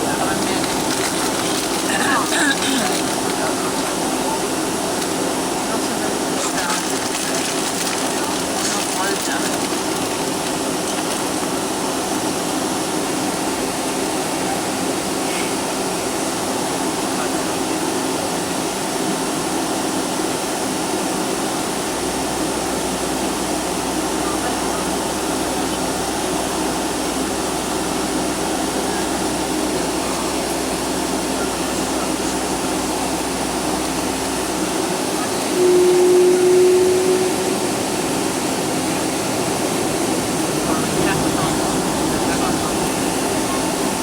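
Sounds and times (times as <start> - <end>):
jet engine and airflow rush: 0.0 - 17.9, 27.5 - 44.0
constant cabin hum: 0.0 - 44.0
deep low hum: 35.4 - 44.0.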